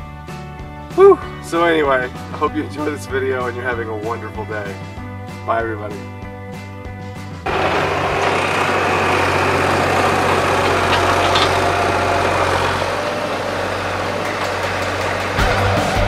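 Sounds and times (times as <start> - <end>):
engine running: 6.8 - 16.0.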